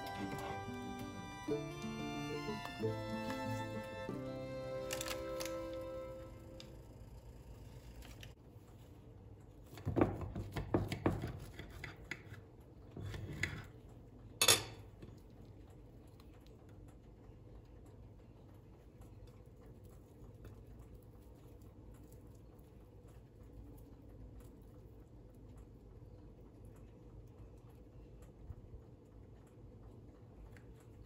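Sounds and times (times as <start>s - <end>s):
dishes and utensils clinking: 14.4s - 14.9s.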